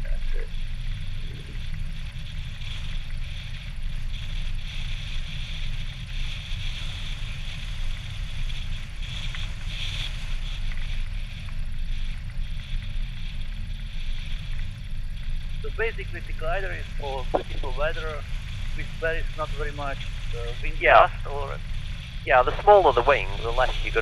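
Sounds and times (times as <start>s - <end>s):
propeller engine drone: 6.2s - 24.0s.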